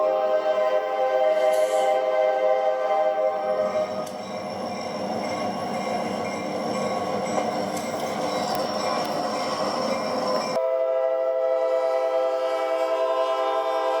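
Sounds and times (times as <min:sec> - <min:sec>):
locomotive air horn: 0:00.0 - 0:04.2, 0:10.5 - 0:14.0
train rail noise: 0:00.0 - 0:14.0.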